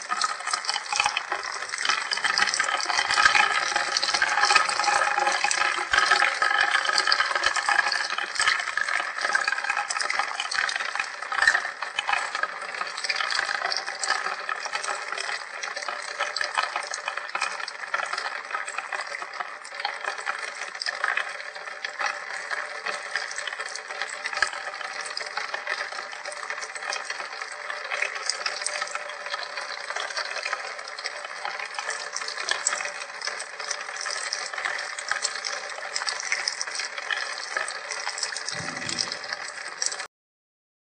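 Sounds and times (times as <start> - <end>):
rain falling and dripping: 32.2 - 40.1.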